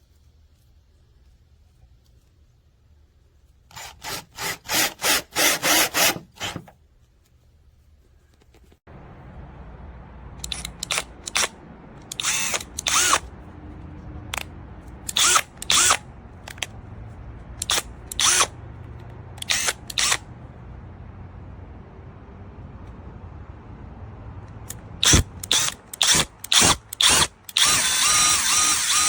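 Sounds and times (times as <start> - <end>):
cordless drill motor whirs: 3.7 - 6.7, 10.4 - 13.3, 14.4 - 16.7, 17.6 - 18.5, 19.4 - 20.3, 24.7 - 29.0.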